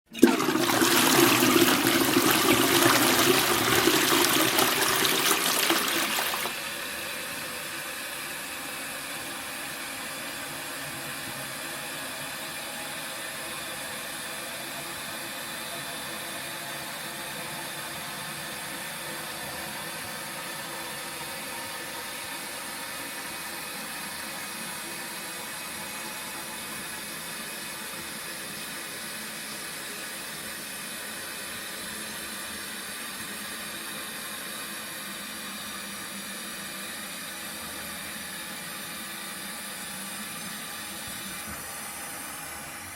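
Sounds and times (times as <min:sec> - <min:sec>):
toilet flushing: 0:00.1 - 0:07.5.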